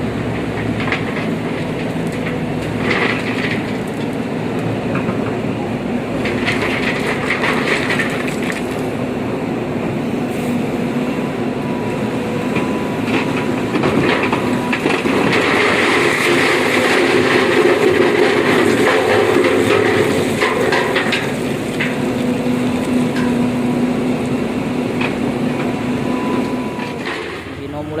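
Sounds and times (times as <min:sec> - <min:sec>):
diesel truck engine rumble: 0:00.0 - 0:28.0
clattering and rattling: 0:06.2 - 0:08.8.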